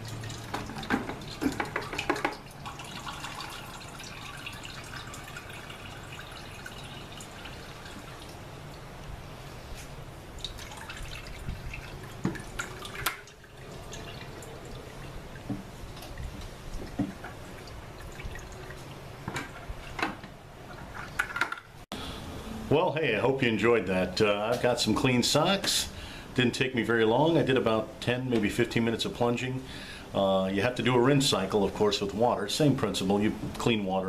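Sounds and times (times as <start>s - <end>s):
soapy water sloshing in bucket: 9.8s - 20.0s.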